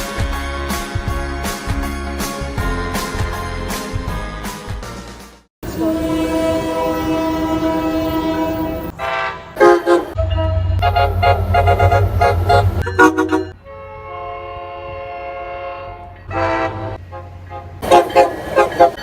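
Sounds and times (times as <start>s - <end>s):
heavy low engine rumble: 5.6s - 19.0s
train horn blasts: 5.6s - 19.0s.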